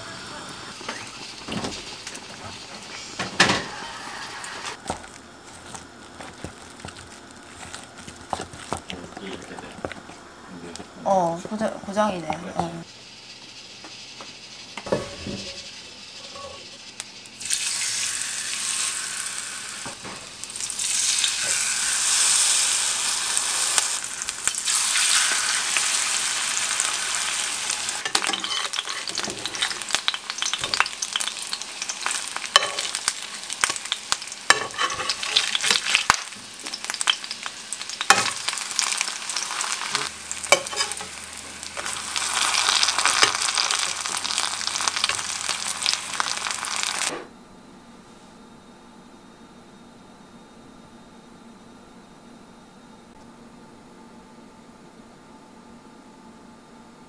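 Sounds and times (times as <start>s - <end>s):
pancake sizzling in oil: 0.0s - 8.8s, 13.0s - 47.1s.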